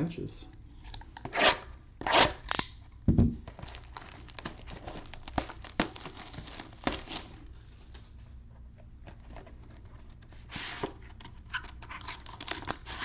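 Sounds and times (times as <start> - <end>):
plastic wrap crinkling and tearing: 3.5 - 7.9.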